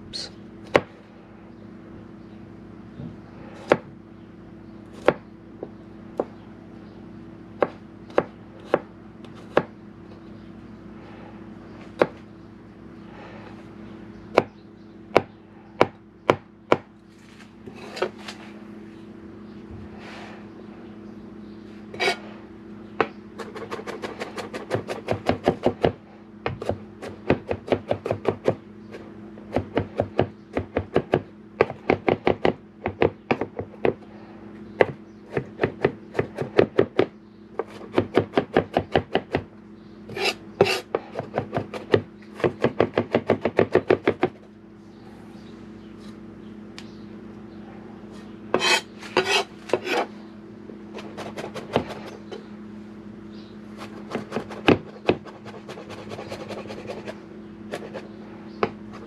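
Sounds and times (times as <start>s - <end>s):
knife chopping on cutting board: 3.6s - 3.9s, 48.5s - 50.0s.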